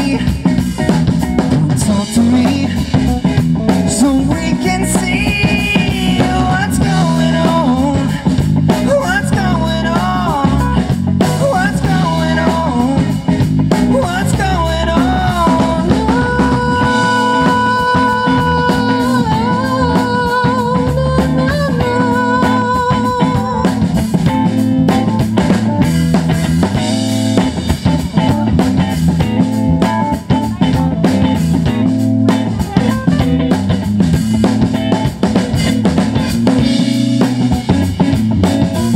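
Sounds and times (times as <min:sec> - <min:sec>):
rock band playing: 0:00.0 - 0:38.9
person singing: 0:01.5 - 0:03.0, 0:03.9 - 0:24.1.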